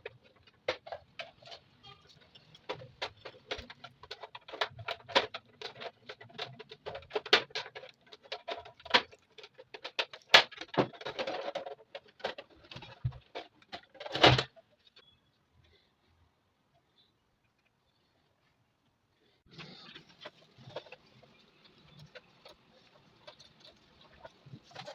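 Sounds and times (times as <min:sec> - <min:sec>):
small hard parts clicking and rattling: 0:00.0 - 0:15.8, 0:19.5 - 0:24.9
scraping: 0:19.3 - 0:24.9.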